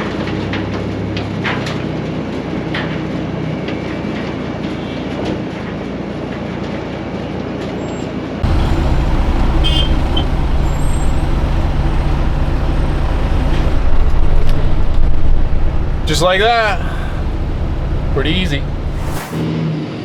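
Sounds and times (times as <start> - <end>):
diesel machinery running: 8.4 - 19.5.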